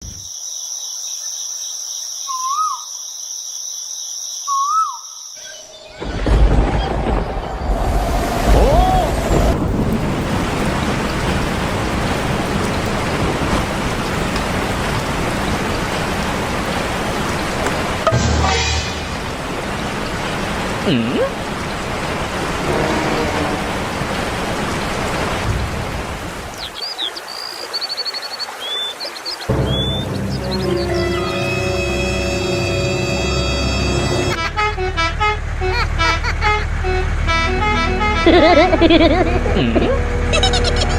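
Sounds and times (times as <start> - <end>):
insects trilling: 0.0 - 7.9
bird whistled calls: 2.3 - 2.9, 4.5 - 6.0, 29.6 - 31.0
rain hissing: 5.7 - 40.3
loud rushing noise: 6.1 - 20.8
bird chirps and trill: 26.6 - 31.8.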